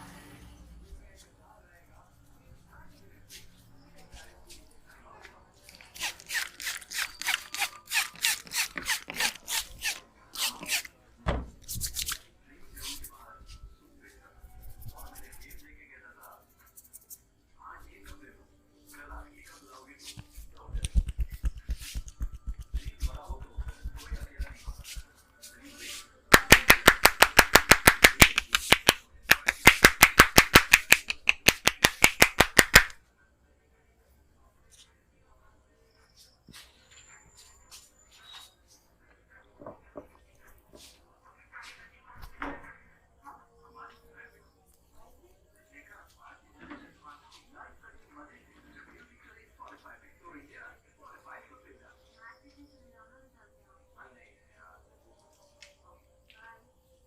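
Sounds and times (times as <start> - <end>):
hands rubbing hair and scalp: 14.6 - 15.7, 20.0 - 33.0.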